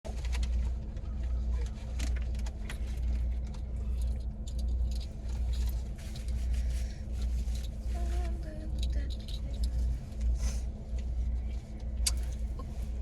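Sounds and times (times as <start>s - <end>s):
small clicks and rattles: 0.1s - 10.4s
low rumble inside car: 0.1s - 13.0s
steady hum: 0.1s - 13.0s.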